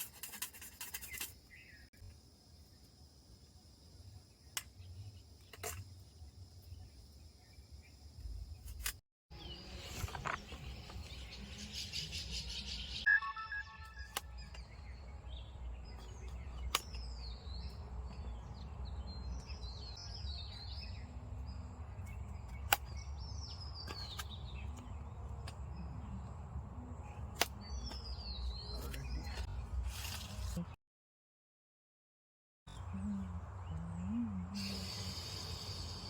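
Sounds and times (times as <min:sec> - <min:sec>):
birds chirping: 0:04.0 - 0:29.5.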